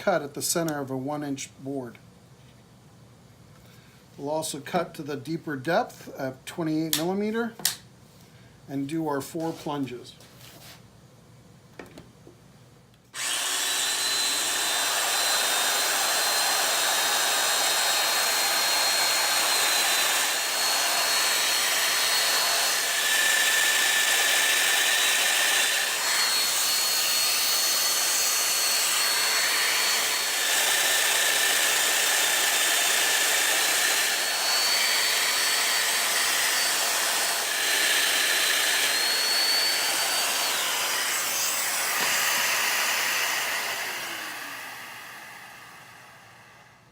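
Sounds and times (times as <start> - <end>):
power joiner cutting wood: 13.2 - 46.7.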